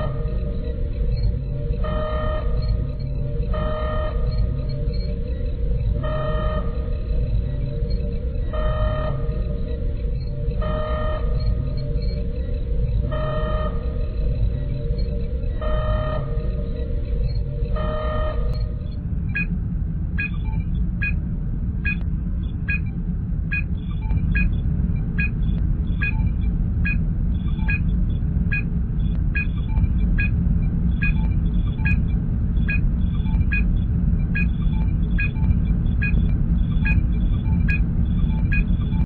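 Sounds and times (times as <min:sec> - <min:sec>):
deep engine rumble: 0:00.0 - 0:39.0
electronic scanner blips: 0:23.5 - 0:27.9, 0:31.0 - 0:39.0.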